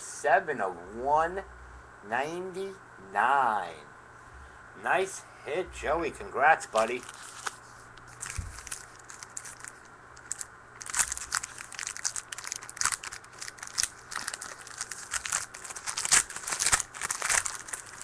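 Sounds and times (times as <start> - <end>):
card pack wrapper crinkling and tearing: 6.7 - 18.0.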